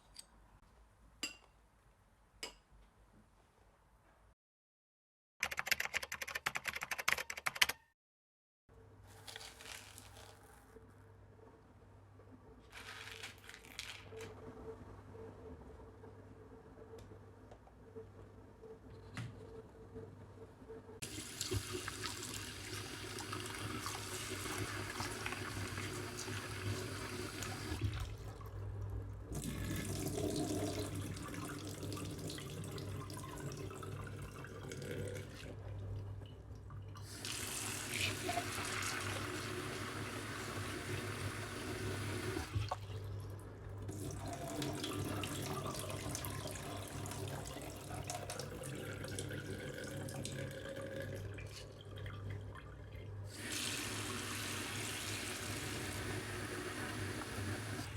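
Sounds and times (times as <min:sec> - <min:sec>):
tap water running into sink: 0:21.0 - 0:28.1.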